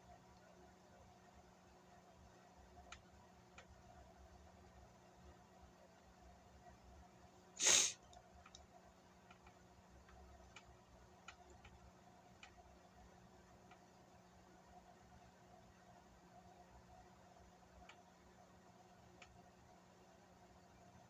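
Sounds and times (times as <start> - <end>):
faint ticks: 2.8 - 4.0, 8.1 - 13.9, 17.8 - 18.1, 19.1 - 19.4
person sneezing: 7.6 - 8.0.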